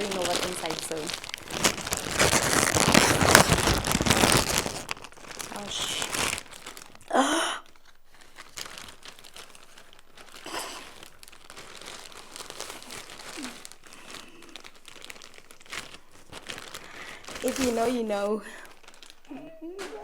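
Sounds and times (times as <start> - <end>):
packaging rustling and crinkling: 0.0 - 20.0
person exclaiming: 19.3 - 20.0.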